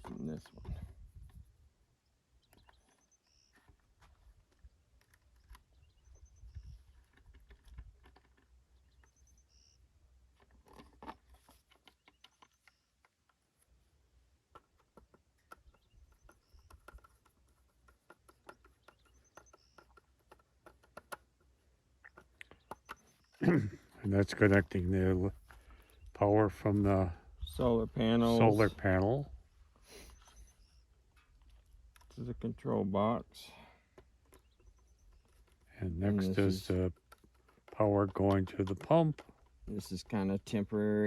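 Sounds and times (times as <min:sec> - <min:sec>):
small clicks and handling noise: 0:02.4 - 0:09.3, 0:10.3 - 0:13.8, 0:14.4 - 0:23.4, 0:24.3 - 0:26.1, 0:30.1 - 0:32.5, 0:33.8 - 0:40.9.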